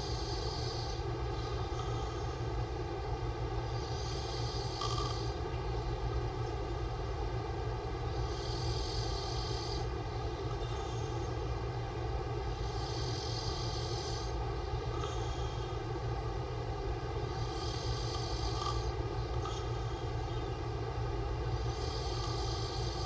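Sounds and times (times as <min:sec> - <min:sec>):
man snoring: 0:00.0 - 0:02.8, 0:03.6 - 0:05.5, 0:08.1 - 0:11.5, 0:12.5 - 0:15.9, 0:17.3 - 0:20.5, 0:21.5 - 0:23.0
steady droning hum: 0:00.0 - 0:23.0.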